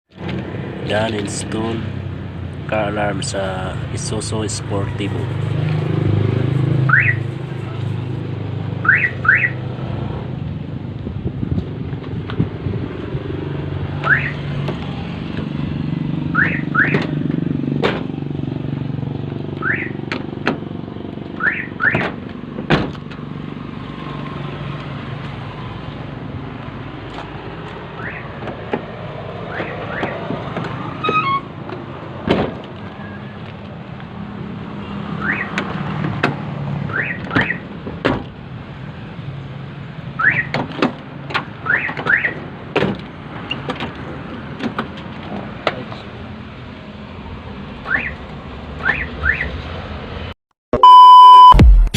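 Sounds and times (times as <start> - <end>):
car alarm chirps: 6.9 - 7.3, 8.8 - 9.6, 14.0 - 14.4, 16.3 - 17.0, 19.6 - 20.0, 21.4 - 22.0, 28.0 - 28.3, 35.2 - 35.6, 36.9 - 37.6, 40.2 - 40.6, 41.6 - 42.4, 47.9 - 48.2, 48.8 - 49.6, 50.8 - 51.7.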